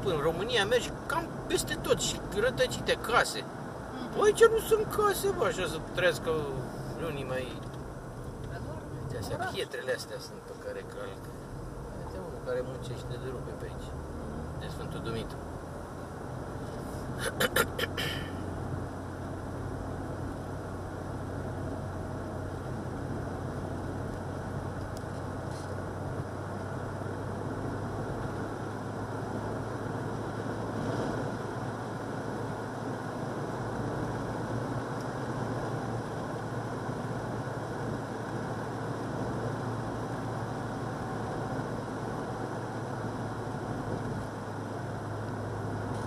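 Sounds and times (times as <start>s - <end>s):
low engine hum: 0.0s - 46.0s
tyre and road noise: 0.0s - 46.0s.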